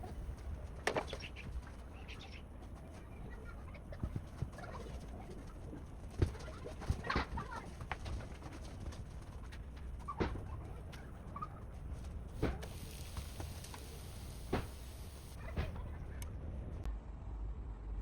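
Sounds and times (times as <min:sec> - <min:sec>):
birds calling: 0:00.0 - 0:05.8, 0:09.5 - 0:15.9
low background rumble: 0:00.0 - 0:18.0.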